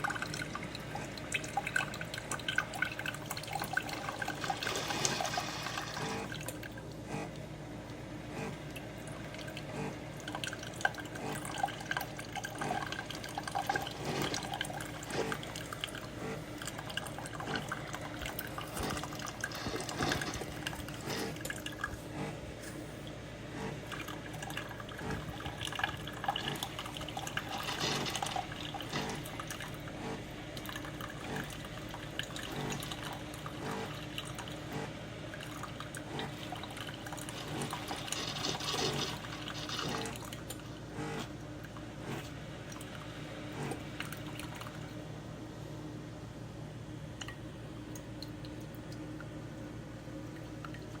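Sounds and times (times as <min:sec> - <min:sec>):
water pouring into cup: 0:00.0 - 0:06.9, 0:08.8 - 0:22.1, 0:23.8 - 0:30.0, 0:35.3 - 0:40.9
coffee maker pump humming: 0:00.0 - 0:51.0.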